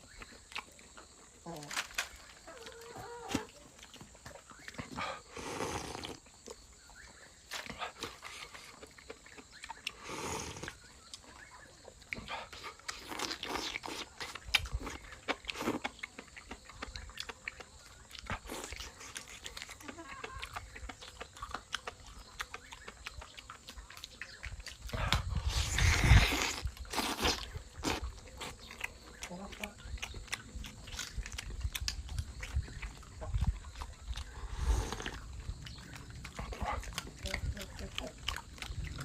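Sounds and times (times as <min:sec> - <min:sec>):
person chewing and lip smacking: 0:00.0 - 0:39.0
slurp or breath: 0:04.9 - 0:06.2, 0:09.9 - 0:10.8, 0:25.0 - 0:27.6, 0:34.2 - 0:35.2.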